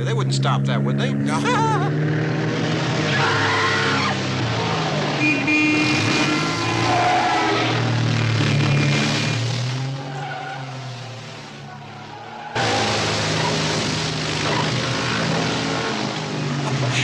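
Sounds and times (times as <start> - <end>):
engine humming: 0.0 - 17.0
tyres squealing on pavement: 3.1 - 4.8, 5.7 - 7.9, 8.7 - 13.7, 14.4 - 14.8.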